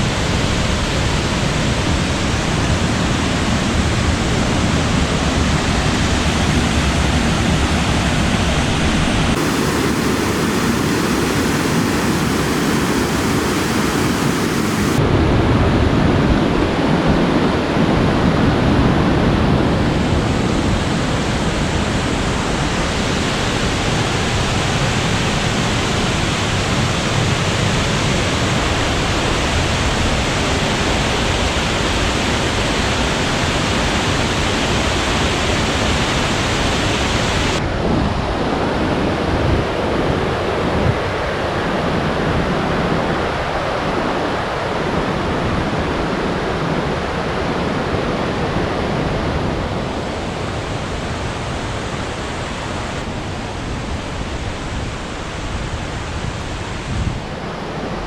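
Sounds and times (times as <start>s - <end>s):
waterfall rushing: 8.8s - 15.0s.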